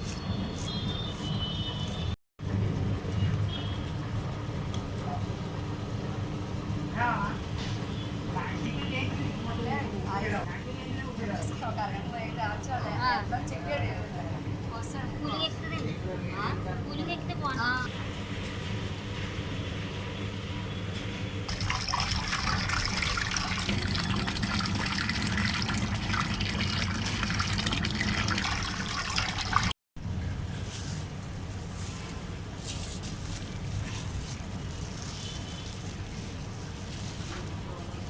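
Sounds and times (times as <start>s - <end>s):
water pouring and splashing: 21.5s - 29.8s.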